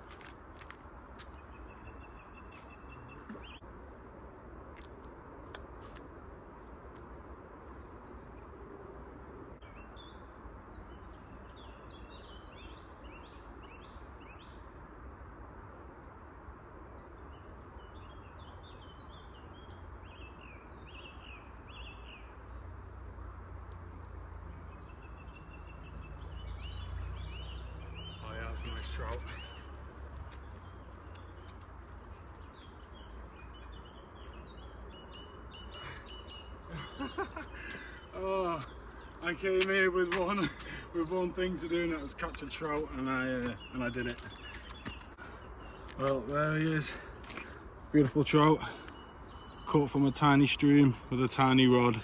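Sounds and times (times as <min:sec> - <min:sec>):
wild birds chirping: 0:00.0 - 0:52.0.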